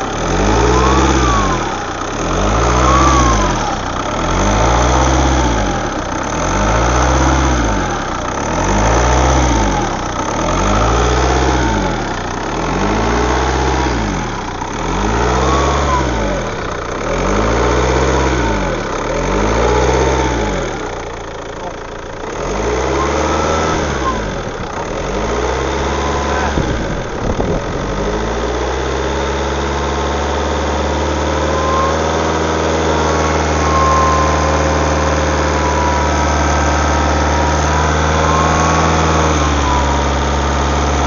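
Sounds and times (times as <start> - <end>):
car engine revving: 0.0 - 41.0
thin whistle: 31.4 - 40.3.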